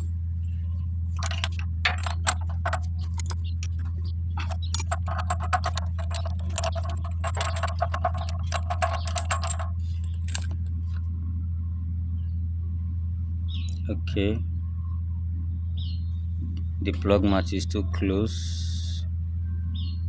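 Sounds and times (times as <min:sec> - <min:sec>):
metal tools clinking: 0:01.2 - 0:11.0.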